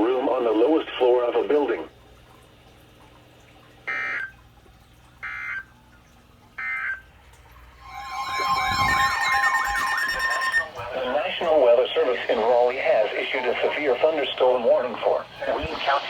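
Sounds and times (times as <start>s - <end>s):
buzzy digital data bursts: 7.8s - 10.7s
wavering alert tone: 7.8s - 10.9s.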